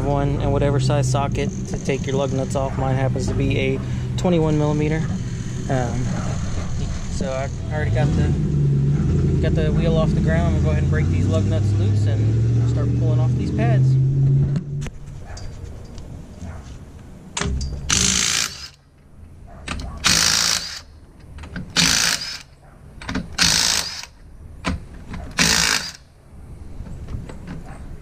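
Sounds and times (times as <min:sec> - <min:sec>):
impact wrench bursts: 0:17.8 - 0:18.8, 0:20.0 - 0:20.9, 0:21.7 - 0:24.2, 0:25.3 - 0:26.1.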